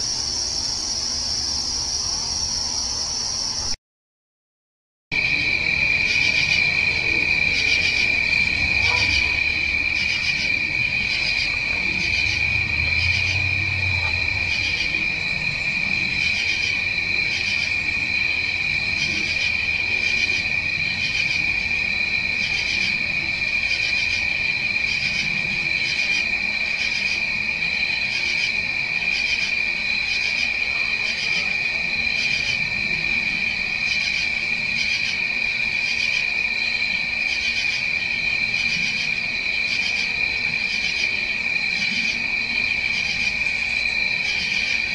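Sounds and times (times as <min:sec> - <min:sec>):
crickets trilling: 0:00.0 - 0:03.8, 0:05.2 - 0:44.9
pulsing insect call: 0:00.0 - 0:03.8, 0:05.2 - 0:44.9.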